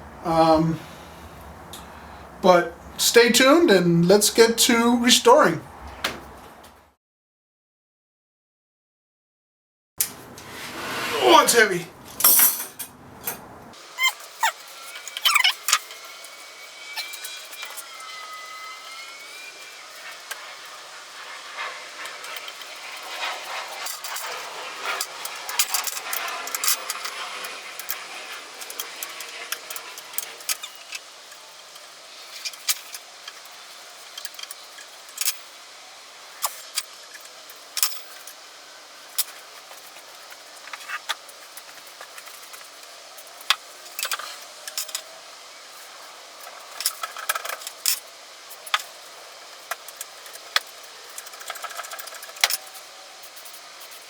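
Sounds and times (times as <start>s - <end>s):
metal parts clinking and clanking: 12.1s - 13.4s.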